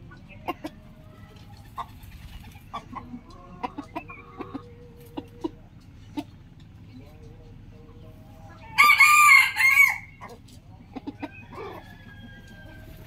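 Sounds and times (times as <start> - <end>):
rooster crowing: 8.8 - 10.2, 11.4 - 13.0.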